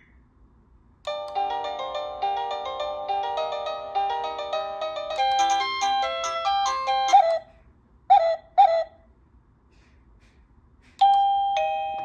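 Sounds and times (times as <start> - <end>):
doorbell chime melody: 1.1 - 7.4, 11.0 - 12.0.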